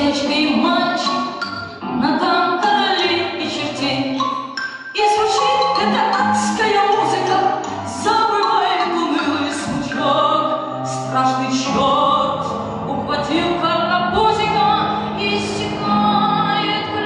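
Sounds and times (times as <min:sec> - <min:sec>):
instrumental backing track: 0:00.0 - 0:17.0
person singing long notes: 0:05.3 - 0:17.0.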